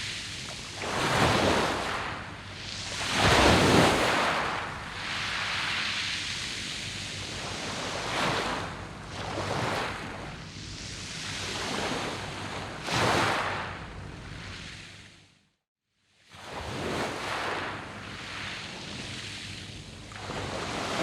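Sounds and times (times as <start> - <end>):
waves washing onto pebble beach: 0.0 - 8.7.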